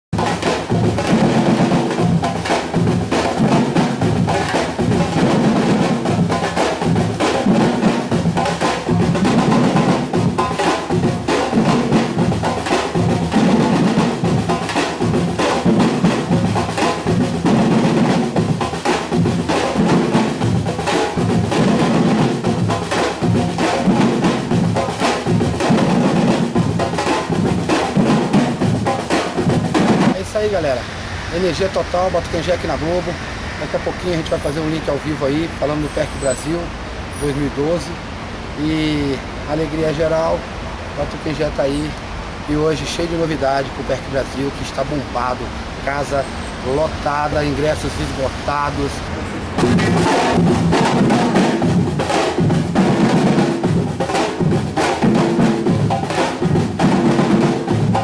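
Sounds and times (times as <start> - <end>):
percussion ensemble of drums: 0.1 - 58.0
rapid snare-like strokes: 0.2 - 30.2, 49.6 - 58.0
low bass drums: 46.6 - 52.8.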